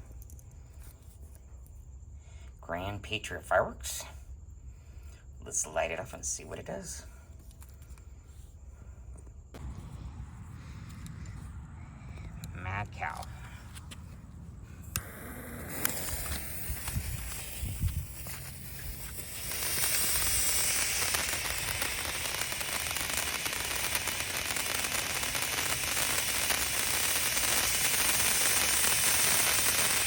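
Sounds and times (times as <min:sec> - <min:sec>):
firework fountain hissing sparks: 0:13.2 - 0:30.0.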